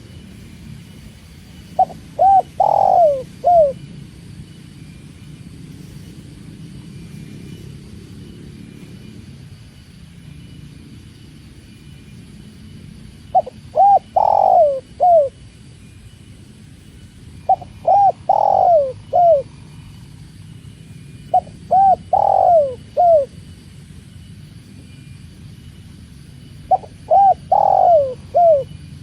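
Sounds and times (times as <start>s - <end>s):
dove cooing: 1.7s - 3.9s, 13.3s - 15.5s, 17.4s - 20.0s, 21.3s - 23.4s, 26.7s - 29.0s.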